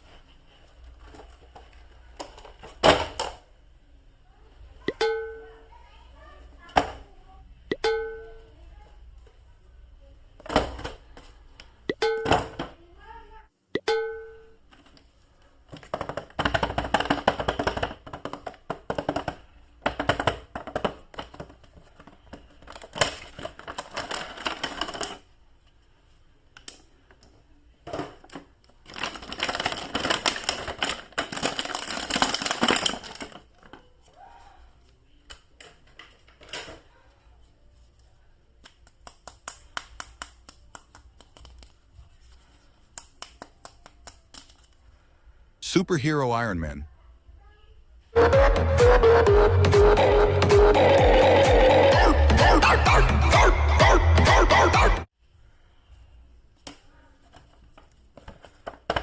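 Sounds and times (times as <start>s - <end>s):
plastic packaging crinkling: 28.8s - 33.3s.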